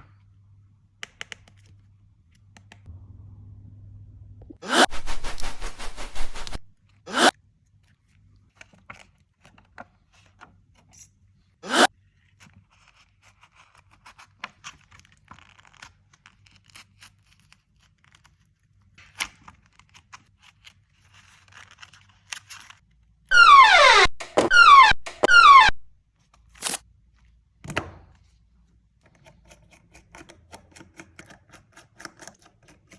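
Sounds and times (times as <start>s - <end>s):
falling pitched sweeps: 23.3s - 25.8s.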